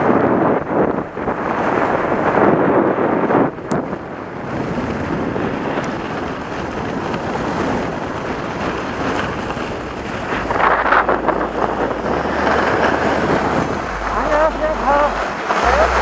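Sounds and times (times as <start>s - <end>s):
wind buffeting microphone: 0.0s - 16.0s
skis hissing over snow: 4.5s - 15.9s.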